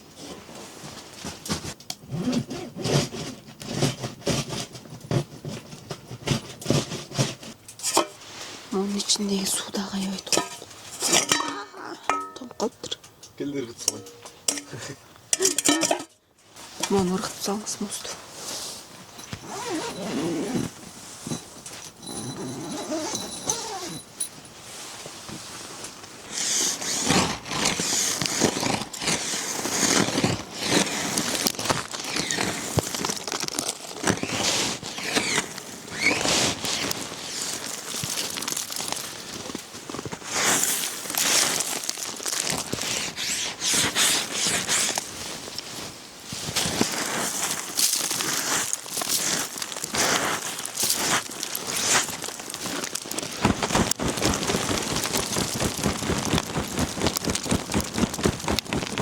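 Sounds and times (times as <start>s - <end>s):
crinkling and rustling: 0.0s - 59.0s.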